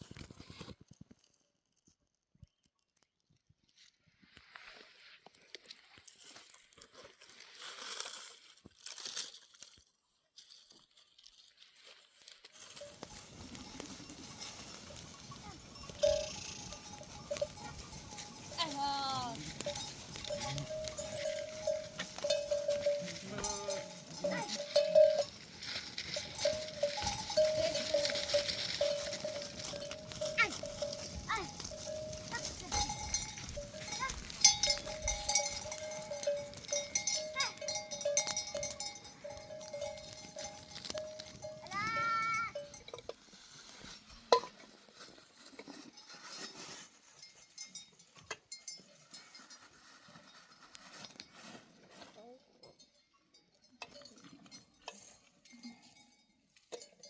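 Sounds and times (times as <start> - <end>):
animal bells clanking: 12.6 - 57.0.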